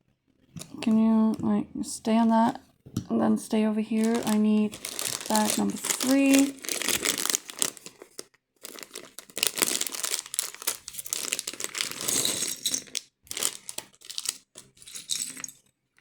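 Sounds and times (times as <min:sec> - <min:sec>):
plastic bags crinkling: 0:03.9 - 0:15.6.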